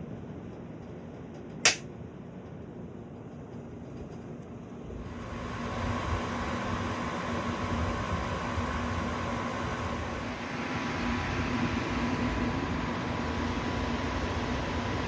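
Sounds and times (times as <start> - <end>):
ceiling fan air rushing: 0.0 - 15.0
low motor hum: 5.0 - 15.0.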